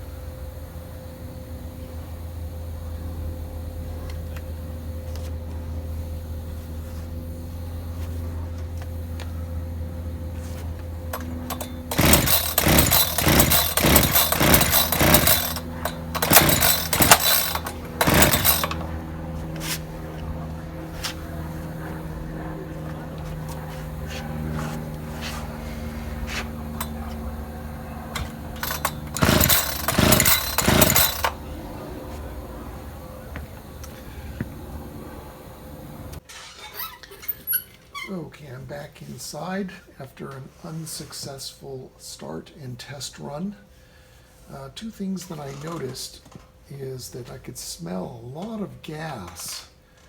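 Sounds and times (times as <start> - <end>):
chainsaw pull-start cranking: 11.1 - 18.9, 26.6 - 27.2, 28.1 - 31.5.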